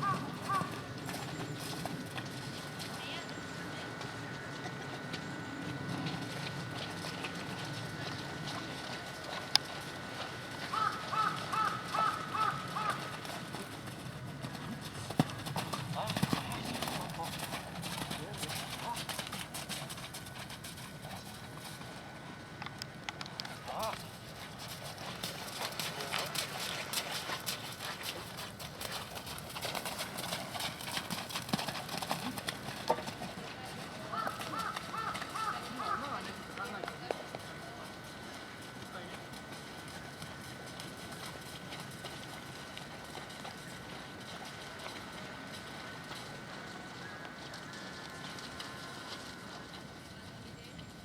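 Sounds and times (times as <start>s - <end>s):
bird calling: 0.0s - 0.8s, 10.7s - 13.2s, 34.0s - 36.8s
horse hoofbeats: 0.0s - 51.0s.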